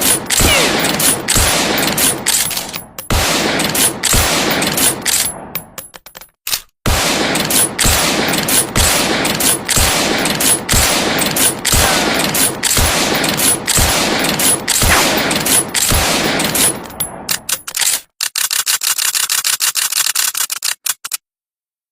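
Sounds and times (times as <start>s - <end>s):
rifle shots echoing: 0.0s - 5.6s, 6.9s - 17.4s
small mechanical clicks: 17.3s - 21.2s.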